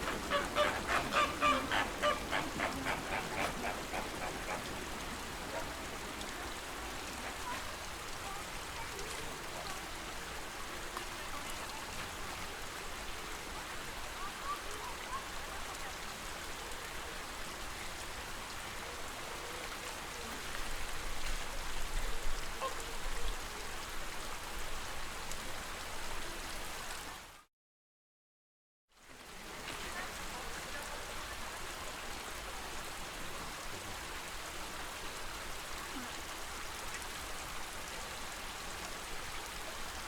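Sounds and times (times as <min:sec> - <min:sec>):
water hissing: 0:00.0 - 0:07.7.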